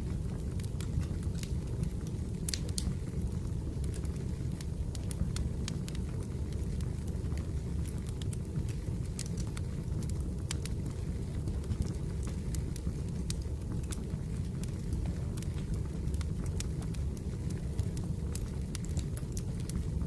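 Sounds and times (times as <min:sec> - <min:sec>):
firewood crackling and popping: 0:00.0 - 0:20.0.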